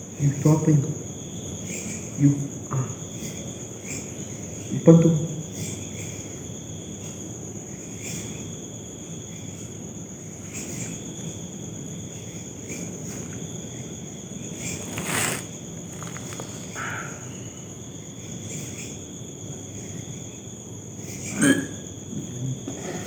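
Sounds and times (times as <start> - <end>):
crickets chirping: 5.8 - 21.3.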